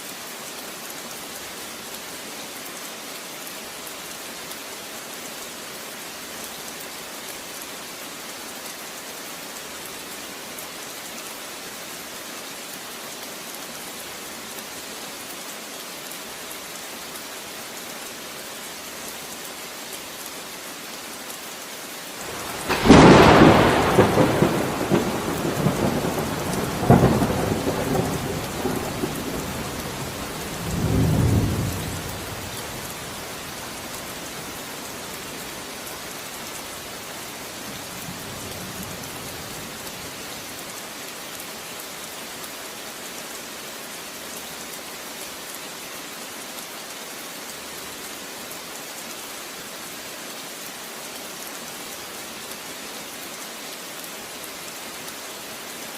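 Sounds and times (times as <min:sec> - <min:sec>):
steady rain: 0:00.0 - 0:55.9
thunder clap and rumble: 0:22.3 - 0:32.5.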